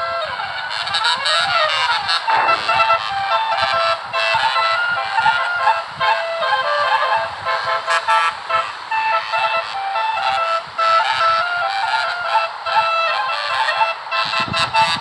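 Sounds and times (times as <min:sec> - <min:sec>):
musical bus horn playing a tune: 0:00.0 - 0:15.0.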